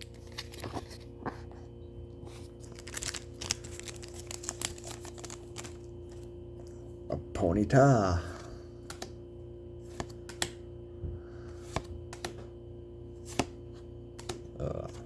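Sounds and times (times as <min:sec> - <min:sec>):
cards clicking and wrapper crinkling: 0:00.0 - 0:01.0, 0:02.3 - 0:06.3
faint steady hum: 0:00.0 - 0:15.0.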